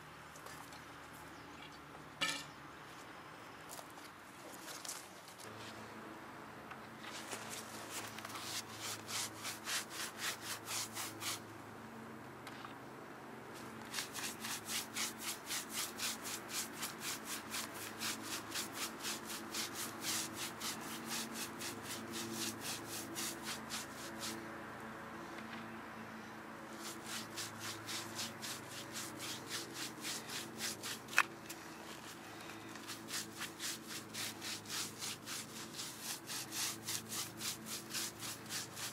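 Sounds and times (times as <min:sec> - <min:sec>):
rhythmic scraping strokes: 0:08.4 - 0:11.4, 0:13.9 - 0:24.4, 0:26.7 - 0:31.2, 0:32.8 - 0:38.9.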